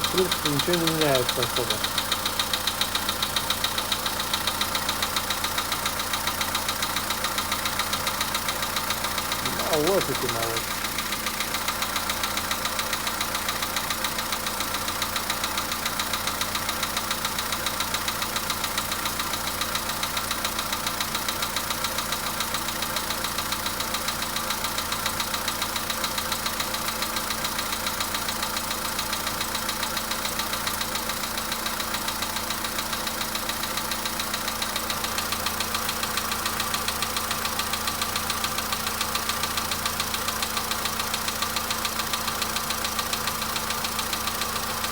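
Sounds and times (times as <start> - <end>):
car engine running: 0.0 - 16.4
rapid engine knocking: 0.0 - 44.9.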